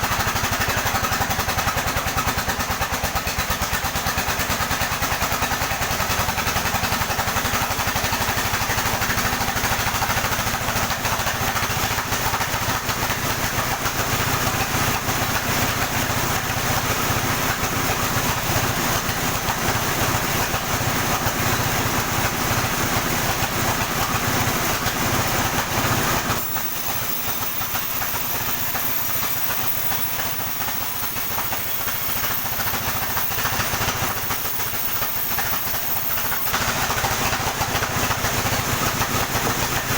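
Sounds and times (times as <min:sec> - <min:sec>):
sawmill deep rumble: 0:00.0 - 0:39.9
saw high hiss: 0:26.4 - 0:37.3.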